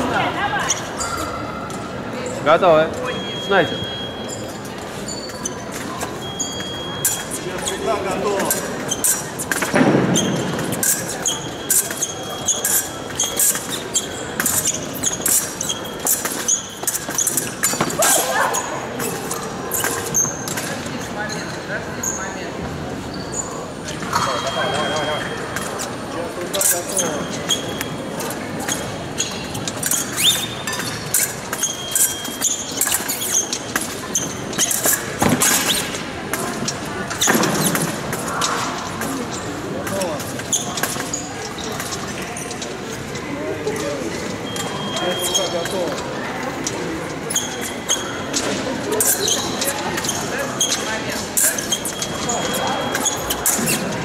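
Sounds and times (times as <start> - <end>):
shoes squeaking on floor: 0.0 - 54.0
loud scuffle: 4.9 - 21.0, 25.5 - 54.0.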